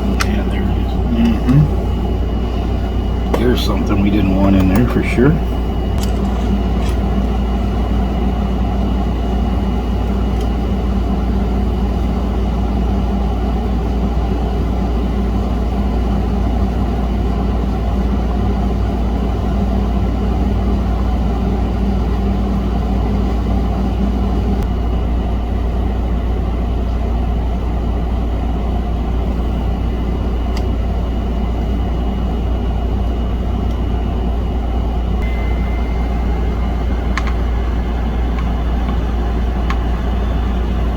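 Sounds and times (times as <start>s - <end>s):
faint high whine: 0.0s - 13.2s, 33.3s - 40.9s
electric machine humming: 0.0s - 40.9s.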